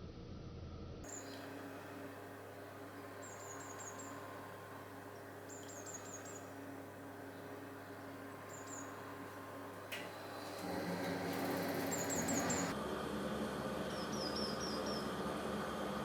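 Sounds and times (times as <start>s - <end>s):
bird chirping: 1.1s - 10.6s, 11.4s - 12.7s
low hum: 1.1s - 16.0s.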